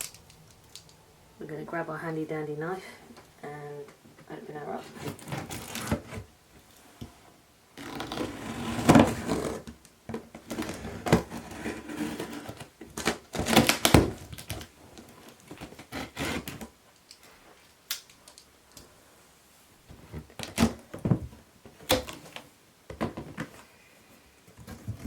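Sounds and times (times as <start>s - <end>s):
cardboard scraping and rustling: 4.8s - 6.3s, 7.8s - 9.7s, 10.4s - 16.7s
knife cutting cardboard box: 4.8s - 6.3s, 7.8s - 9.7s, 10.4s - 14.6s.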